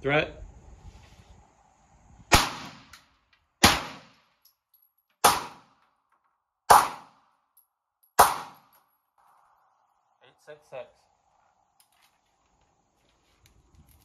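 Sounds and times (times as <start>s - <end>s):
pistol shots with echo: 2.3s - 2.9s, 3.6s - 4.2s, 5.2s - 5.8s, 6.7s - 7.2s, 8.2s - 8.7s.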